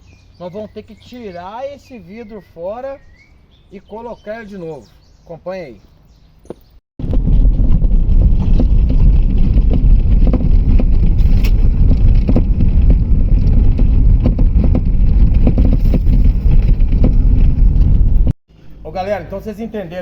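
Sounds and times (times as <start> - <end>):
windshield knocks and rattles: 6.5 - 18.2
pickup truck low rumble: 6.5 - 18.9.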